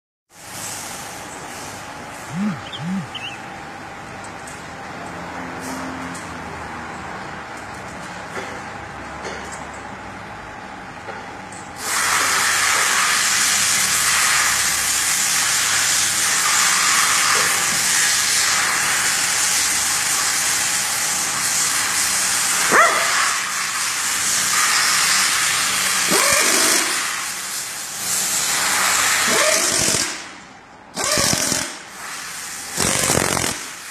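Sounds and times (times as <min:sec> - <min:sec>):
loud steady hiss: 0:11.8 - 0:29.3.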